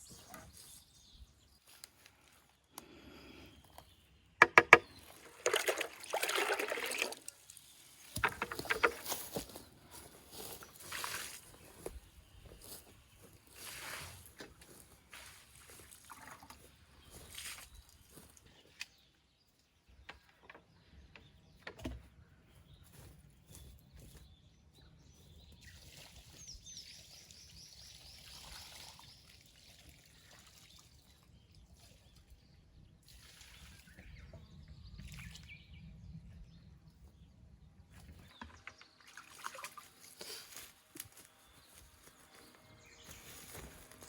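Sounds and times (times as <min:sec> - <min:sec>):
sharp knocks: 0:04.4 - 0:04.9.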